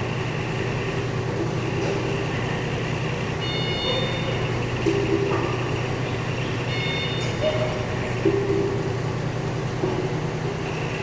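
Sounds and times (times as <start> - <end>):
engine running: 0.0 - 11.0
high beeping tones: 6.4 - 8.9.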